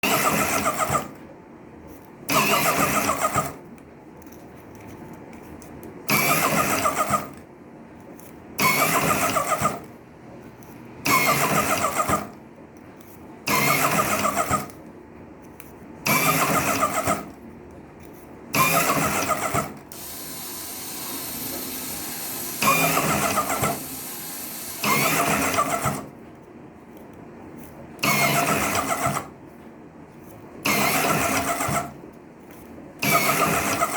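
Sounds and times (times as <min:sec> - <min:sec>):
faint motor hum: 0:00.0 - 0:33.9
machine motor whirring: 0:08.6 - 0:09.9, 0:11.0 - 0:12.4, 0:13.5 - 0:14.8, 0:16.0 - 0:17.4, 0:18.5 - 0:26.1, 0:28.0 - 0:29.3, 0:30.6 - 0:32.0, 0:33.0 - 0:33.9.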